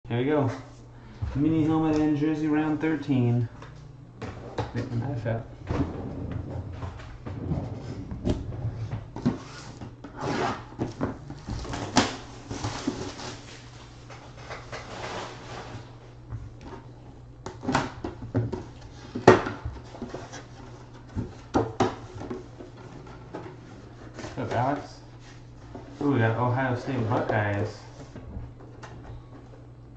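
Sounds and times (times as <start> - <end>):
steady low hum: 0.0 - 29.9.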